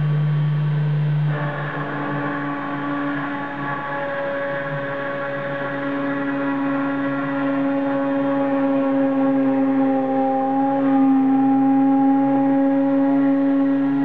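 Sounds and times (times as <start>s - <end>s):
cnc machine motors whining: 0.0s - 14.0s.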